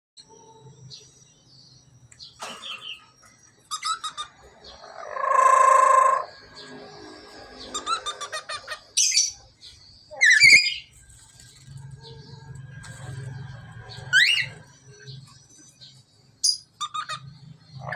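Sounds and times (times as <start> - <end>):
parrot chattering calls: 3.7 - 6.3, 7.7 - 9.4, 16.5 - 17.9.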